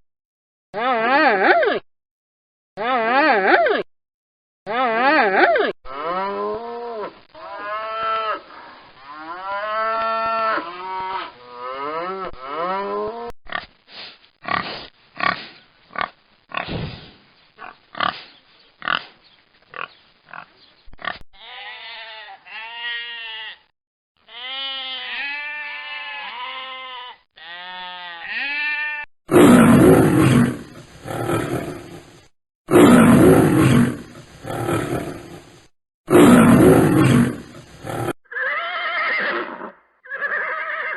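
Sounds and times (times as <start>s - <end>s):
bleating-like calls: 21.1s - 29.1s, 38.3s - 40.9s.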